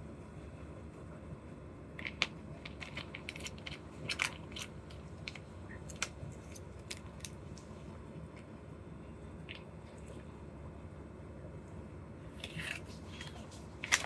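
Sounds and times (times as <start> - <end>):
packaging crackling: 12.4 - 14.0.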